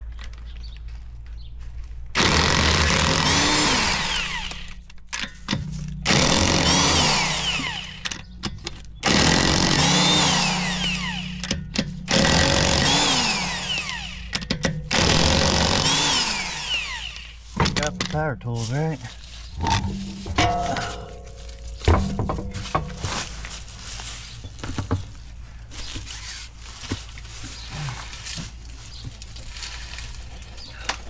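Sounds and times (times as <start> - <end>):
impact wrench spinning lug nuts: 2.2 - 18.2, 19.5 - 23.4.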